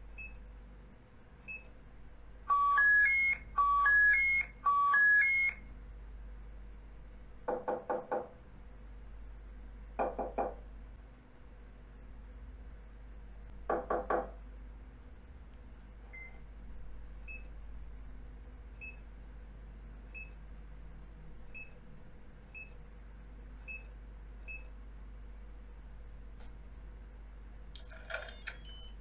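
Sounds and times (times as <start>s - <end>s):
door lock keypad beeping: 2.5s - 5.6s, 27.8s - 29.0s
knocks on a door: 7.5s - 8.4s, 10.0s - 10.6s, 13.6s - 14.4s.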